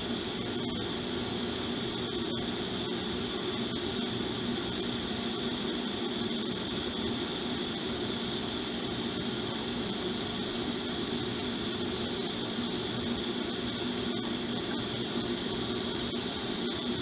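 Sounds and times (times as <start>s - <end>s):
welding arc hissing and buzzing: 0.0s - 17.0s.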